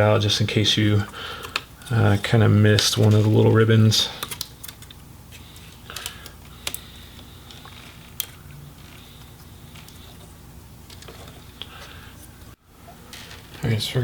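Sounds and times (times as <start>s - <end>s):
small parts clicking and tapping: 1.4s - 1.9s, 4.2s - 5.0s, 5.6s - 10.3s.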